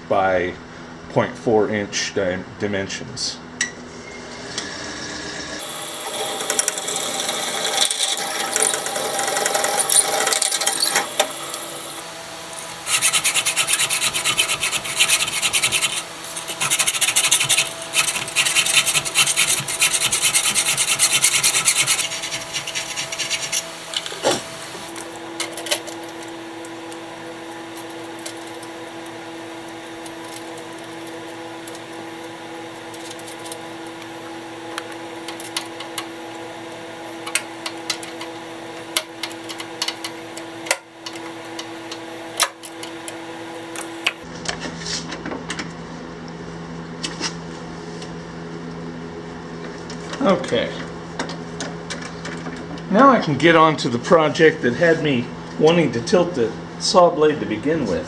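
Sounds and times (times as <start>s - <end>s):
metal file rasping on metal: 12.7s - 23.8s.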